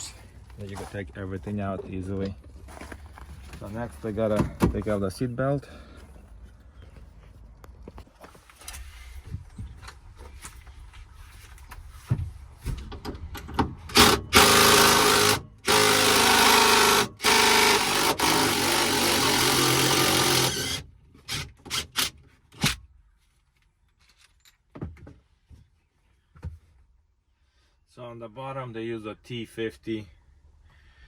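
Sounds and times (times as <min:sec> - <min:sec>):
cordless power tool running: 0:14.0 - 0:22.0.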